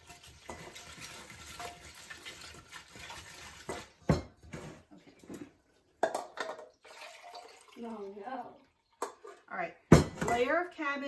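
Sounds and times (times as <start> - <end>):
cabbage tossed in a bowl: 0.0 - 4.7.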